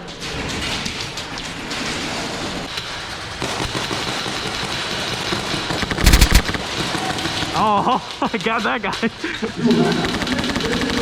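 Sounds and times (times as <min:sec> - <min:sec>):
rustling: 0:05.9 - 0:06.6
airsoft gun shots: 0:06.0 - 0:06.6.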